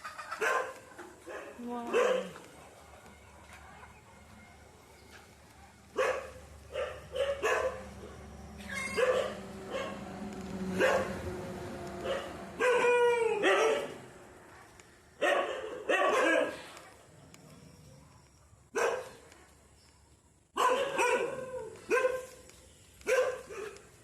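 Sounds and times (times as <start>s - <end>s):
dog barking: 0.3s - 2.8s, 5.2s - 10.0s, 10.7s - 11.2s, 12.0s - 17.1s, 18.7s - 19.5s, 20.6s - 23.9s.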